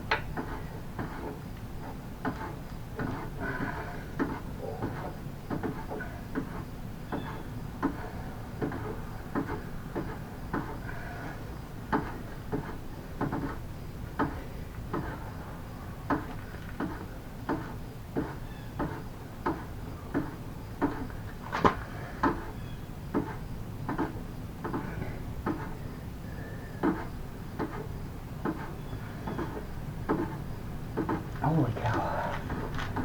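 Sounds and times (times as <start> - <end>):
low steady hum: 19.2 - 33.0.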